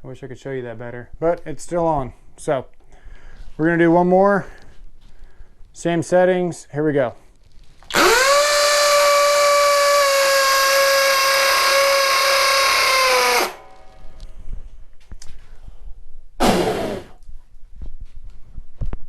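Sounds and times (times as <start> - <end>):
hammer drill into concrete: 7.9 - 13.6.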